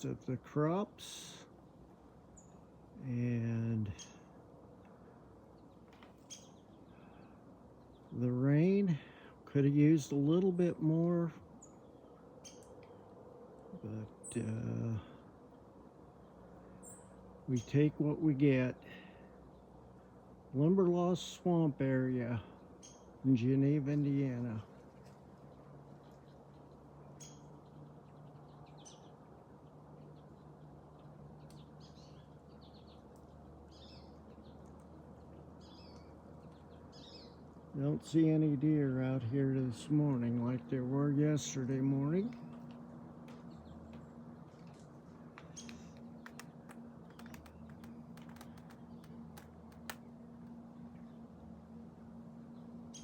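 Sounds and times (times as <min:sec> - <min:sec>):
faint birdsong: 0:00.0 - 0:53.0
low steady hum: 0:00.0 - 0:53.0
sharp clicks and ticks: 0:45.4 - 0:50.1.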